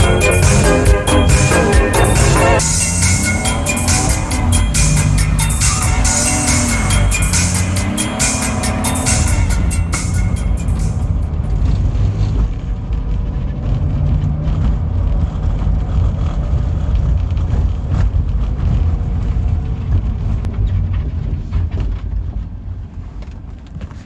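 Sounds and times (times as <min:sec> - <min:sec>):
car engine deep rumble: 0:00.0 - 0:11.7.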